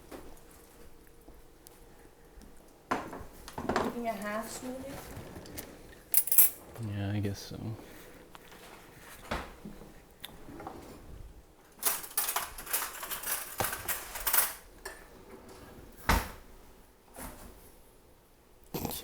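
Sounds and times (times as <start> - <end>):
kitchen utensils clattering: 3.6 - 6.8, 11.7 - 15.7.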